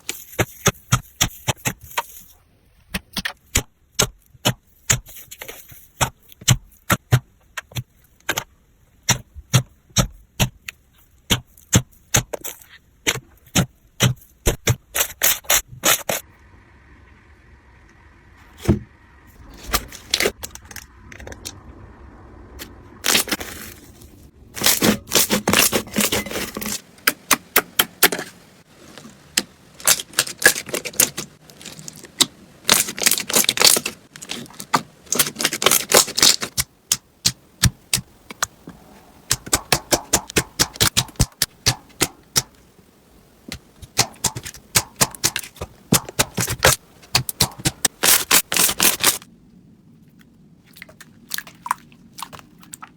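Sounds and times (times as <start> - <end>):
slime clicking and popping: 43.9 - 49.1.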